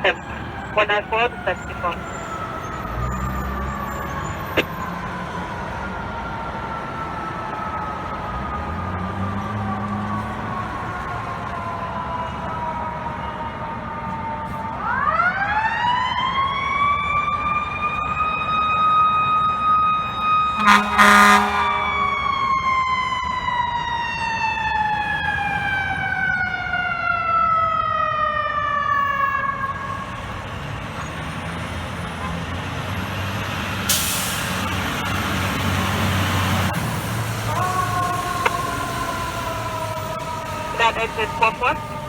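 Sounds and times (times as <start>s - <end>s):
fire truck siren wailing: 0.0s - 42.0s
air horn blast: 20.6s - 22.5s.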